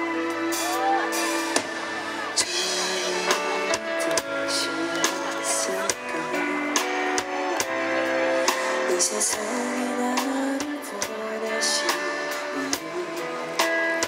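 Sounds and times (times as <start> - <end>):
drum kit: 0.0 - 14.0
guitar chords: 0.0 - 14.0
keyboard chords: 0.0 - 14.0.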